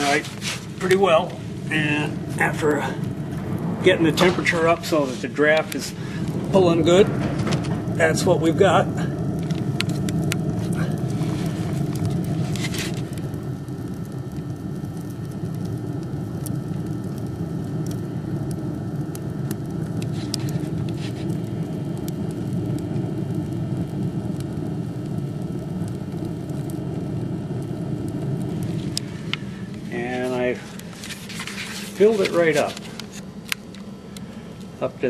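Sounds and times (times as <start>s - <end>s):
furnace fire rushing: 0.0s - 35.0s.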